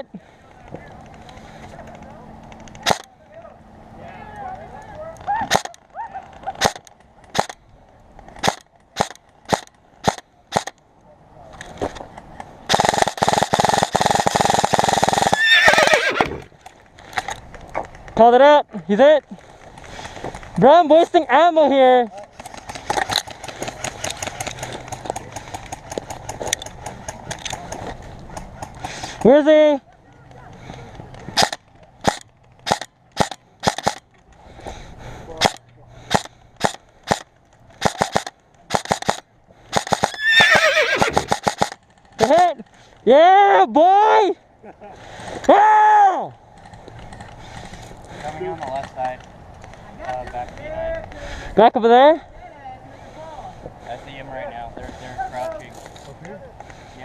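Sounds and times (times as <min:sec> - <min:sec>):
airsoft gun full-auto bursts: 0:12.7 - 0:15.4, 0:37.8 - 0:40.2
airsoft gun shots: 0:35.4 - 0:40.2.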